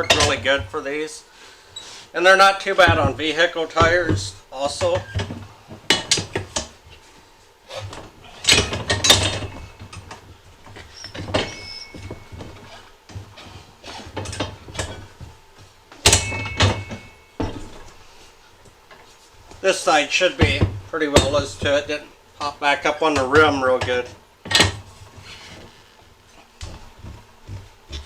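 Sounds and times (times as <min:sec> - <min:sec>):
tire changer metal clanks: 0:00.0 - 0:00.6, 0:02.8 - 0:06.8, 0:07.7 - 0:15.3, 0:16.0 - 0:18.0, 0:20.4 - 0:24.9
short squeak: 0:10.9 - 0:12.1.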